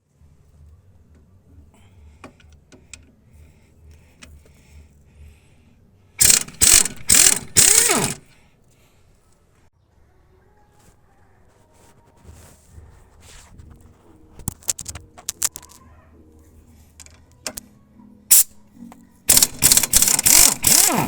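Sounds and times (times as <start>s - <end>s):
ratchet wrench whining: 6.2s - 8.3s, 19.3s - 21.0s.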